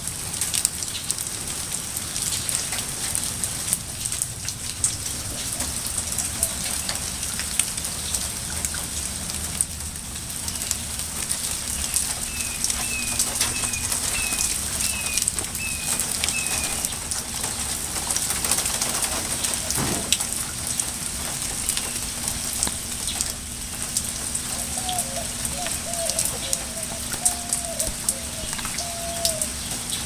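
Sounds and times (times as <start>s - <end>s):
steady rain with drips: 0.0s - 30.0s
bird chirping: 11.7s - 17.0s
lower bird calls: 11.7s - 17.1s, 24.5s - 30.0s.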